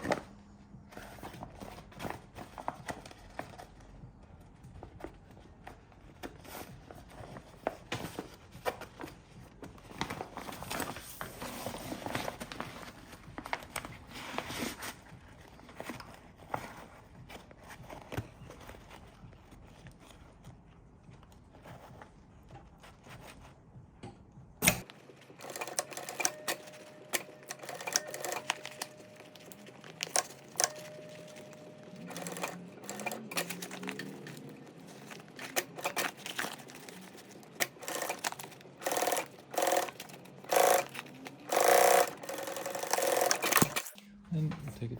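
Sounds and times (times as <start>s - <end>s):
sewing machine clicks: 24.6s - 29.1s, 30.0s - 34.4s, 35.4s - 44.0s
sewing machine stitching: 24.6s - 44.0s.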